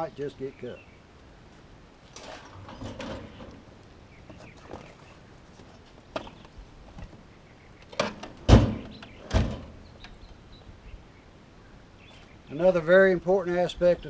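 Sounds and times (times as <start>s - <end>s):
heavy thumps: 8.0s - 9.8s.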